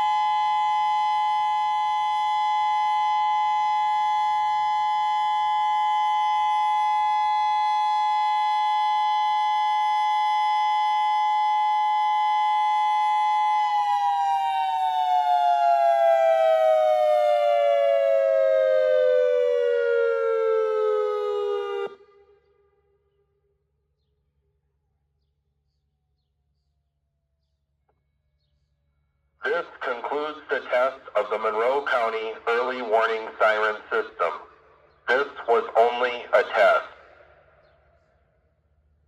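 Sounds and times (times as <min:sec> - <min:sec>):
two-note electronic siren: 0:00.0 - 0:22.6.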